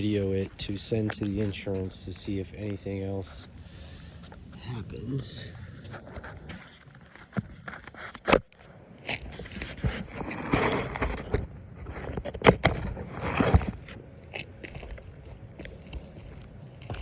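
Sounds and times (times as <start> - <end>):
scraping on roof shingles: 5.8 - 8.4, 9.0 - 17.0.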